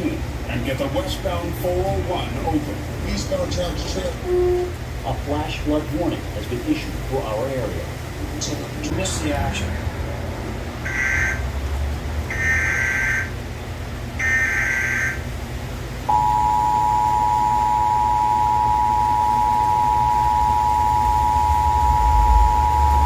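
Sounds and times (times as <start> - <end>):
two-tone attention signal: 16.1 - 23.0.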